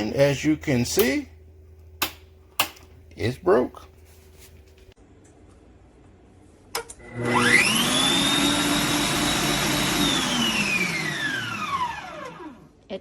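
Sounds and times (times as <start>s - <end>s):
mixer motor whining: 6.8s - 12.8s.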